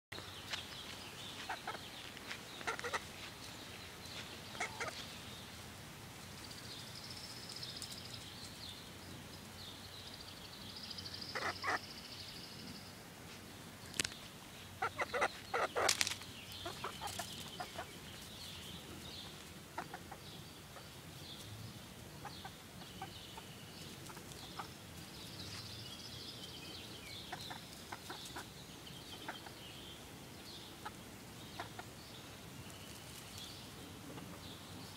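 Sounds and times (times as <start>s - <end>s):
hens clucking: 1.4s - 1.9s, 2.6s - 3.2s, 4.5s - 5.1s, 11.3s - 11.8s, 14.8s - 16.0s, 16.6s - 18.1s, 19.2s - 20.9s, 22.1s - 24.8s, 27.3s - 29.6s, 30.7s - 32.0s.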